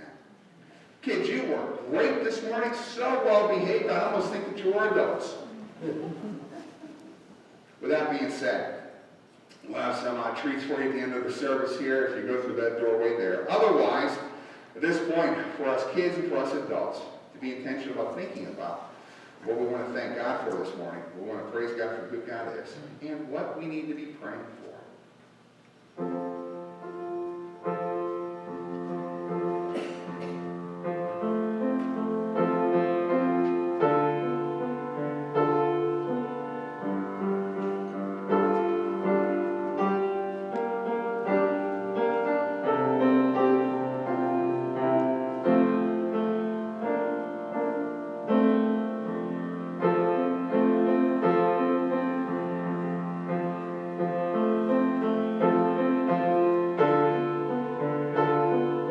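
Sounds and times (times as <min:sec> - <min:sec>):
slow reflective piano music: 0:26.0 - 0:58.9.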